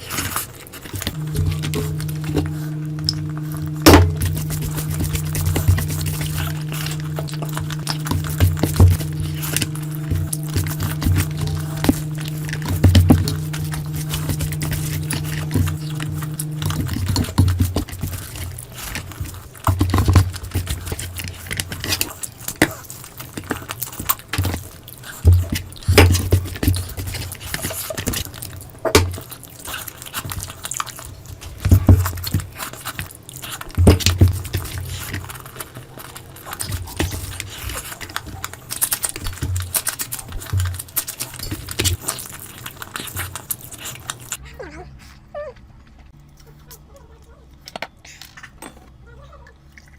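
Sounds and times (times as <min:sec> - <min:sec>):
chewing and smacking: 0:00.0 - 0:44.4, 0:49.2 - 0:49.9
steady held tone: 0:01.1 - 0:17.8
short low thumps: 0:01.2 - 0:17.4.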